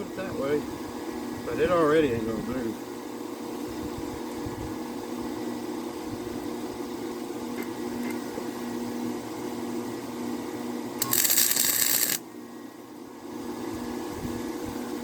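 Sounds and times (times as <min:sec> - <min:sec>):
steady machine hum: 0:00.0 - 0:15.0
arc welding crackling and hissing: 0:11.0 - 0:12.2.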